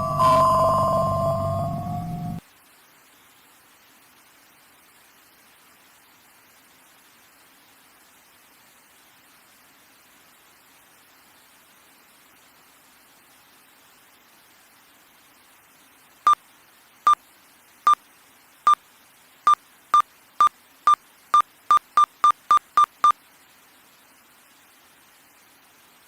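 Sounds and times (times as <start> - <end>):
short electronic beeps: 0.0 - 0.8, 21.7 - 23.2
faint static hiss: 0.8 - 26.0.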